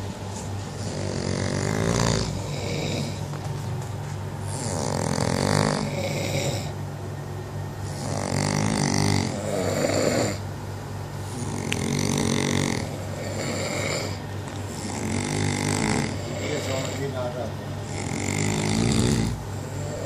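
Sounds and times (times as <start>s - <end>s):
person snoring loudly: 0.8s - 3.2s, 4.5s - 6.8s, 7.8s - 10.4s, 11.3s - 17.1s, 17.8s - 20.0s.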